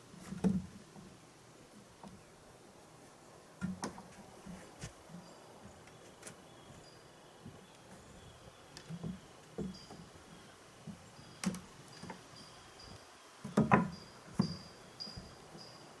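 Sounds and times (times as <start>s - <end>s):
gate and latch knocks and clanks: 13.5s - 14.5s.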